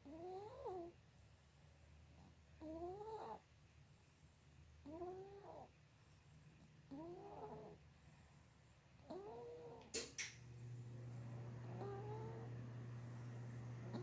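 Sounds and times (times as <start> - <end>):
animal snoring: 4.8 - 5.7, 6.9 - 7.8
sharp clicks: 9.8 - 10.4.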